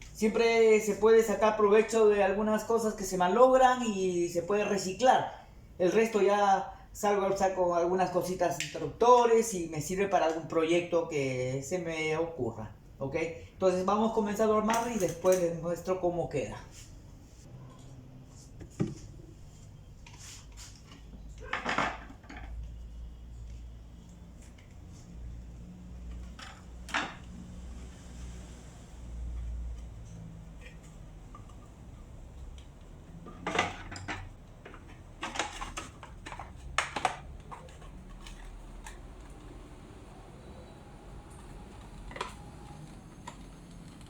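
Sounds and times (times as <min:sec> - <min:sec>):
parts clattering on work surface: 0:21.4 - 0:22.6, 0:33.3 - 0:38.5.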